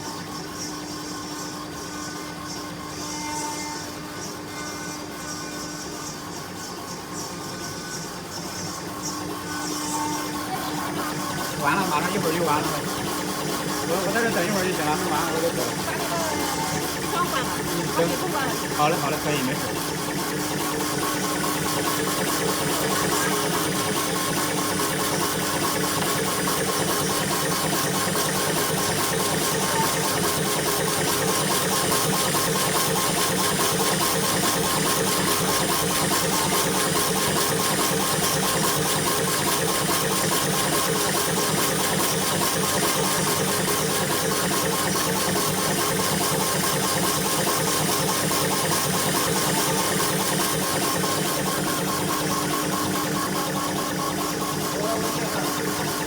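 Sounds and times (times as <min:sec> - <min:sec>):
machine mechanical hum: 0:00.0 - 0:56.0
steady machine tones: 0:09.2 - 0:56.0
fast even pulsing: 0:10.4 - 0:36.8.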